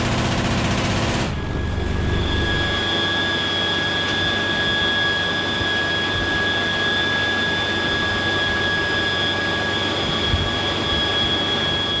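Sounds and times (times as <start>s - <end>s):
helicopter engine whine and rumble: 0.0s - 12.0s.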